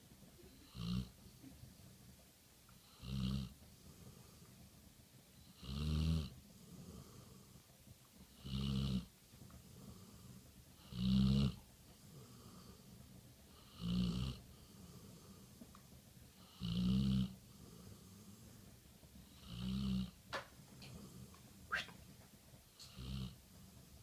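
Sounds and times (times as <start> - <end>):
dog snoring: 0.5 - 1.2, 2.8 - 4.5, 5.4 - 7.7, 8.3 - 15.6, 16.4 - 20.2, 22.8 - 23.4.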